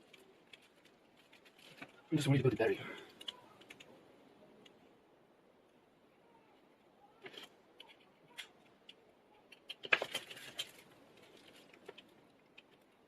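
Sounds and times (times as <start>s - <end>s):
clicks and scrapes of small parts: 0.0s - 2.0s, 3.0s - 3.9s, 6.6s - 13.0s.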